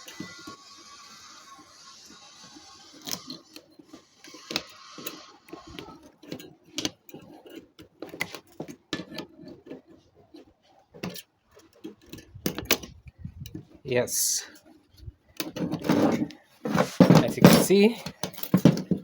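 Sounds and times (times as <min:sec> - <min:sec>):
metal clicks and knocks: 0:04.3 - 0:13.8, 0:15.4 - 0:19.0.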